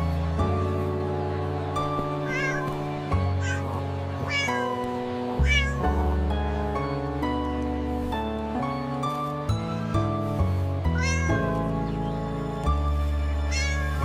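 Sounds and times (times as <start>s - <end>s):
soft background music: 0.0s - 14.0s
cat meowing: 1.9s - 6.1s, 10.9s - 11.7s, 13.4s - 14.0s.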